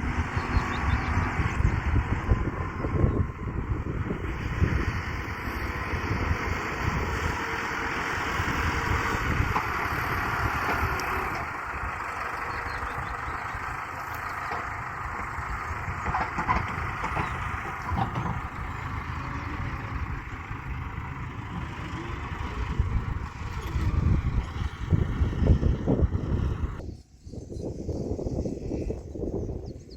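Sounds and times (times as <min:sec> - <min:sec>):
quad bike engine running: 0:00.0 - 0:14.6, 0:21.6 - 0:26.7
wind rumble on microphone: 0:00.0 - 0:29.9.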